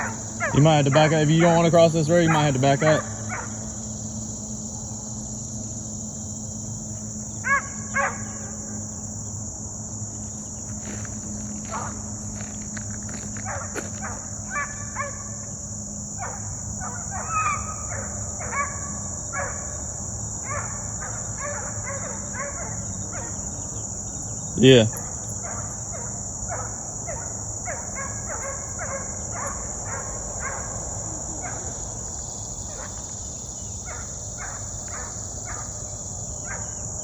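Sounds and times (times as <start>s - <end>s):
hounds baying and barking: 0.0s - 5.0s, 6.9s - 9.0s, 10.2s - 36.9s
insects droning: 0.0s - 37.0s.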